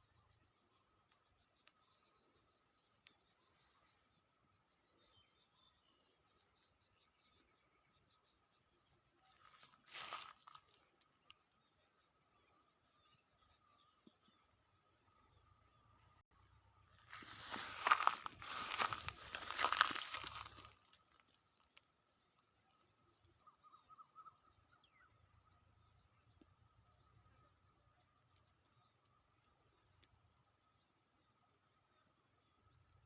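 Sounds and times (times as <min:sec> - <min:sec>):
insects trilling: 0:00.0 - 0:33.0
rustling and crunching of leaves: 0:09.6 - 0:10.7, 0:17.1 - 0:21.0.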